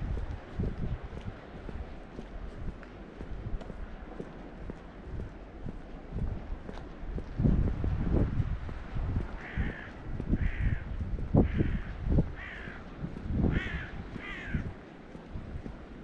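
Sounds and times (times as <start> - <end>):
bird harsh cawing calls: 9.4 - 12.9, 13.5 - 14.7.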